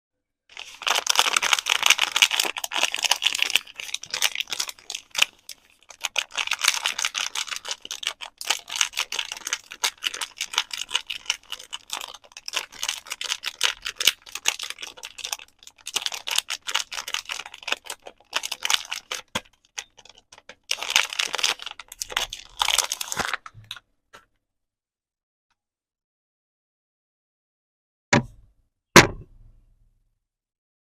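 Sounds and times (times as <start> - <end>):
packaging crinkling and rustling: 0.5 - 23.8.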